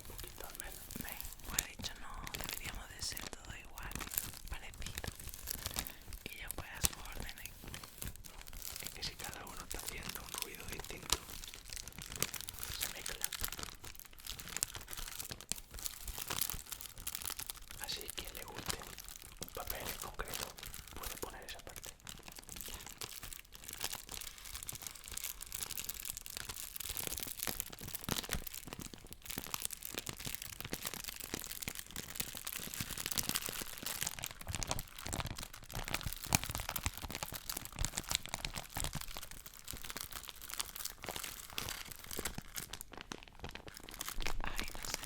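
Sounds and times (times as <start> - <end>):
paper crumpling: 0.0 - 45.0.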